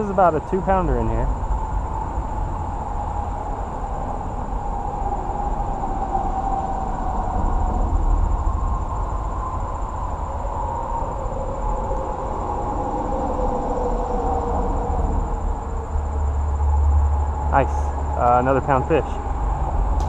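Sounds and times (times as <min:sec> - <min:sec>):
faint hum falling in pitch: 0:00.0 - 0:20.0
heavy vehicle rumbling past: 0:13.5 - 0:20.0.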